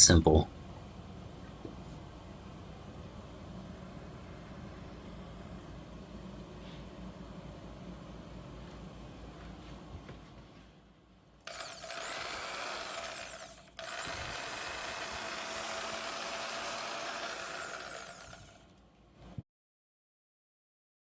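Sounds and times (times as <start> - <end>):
bandsaw motor running: 11.5 - 18.7.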